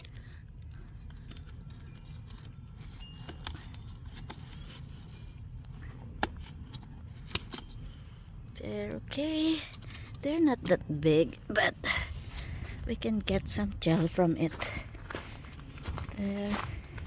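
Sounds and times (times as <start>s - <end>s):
handling clicks and rustles: 0.0s - 8.4s
steady low rumble: 0.0s - 17.0s.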